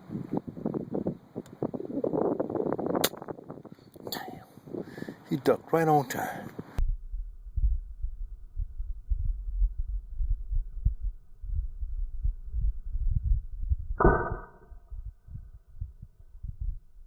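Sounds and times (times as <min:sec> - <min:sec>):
wind buffeting microphone: 0:00.0 - 0:05.5, 0:07.5 - 0:17.0
sudden ringing sound: 0:14.0 - 0:15.0.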